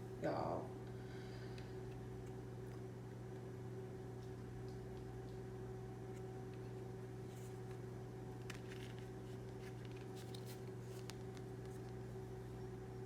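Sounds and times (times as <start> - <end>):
steady low hum: 0.0 - 13.0
tarot cards brushing and clicking: 6.1 - 12.2.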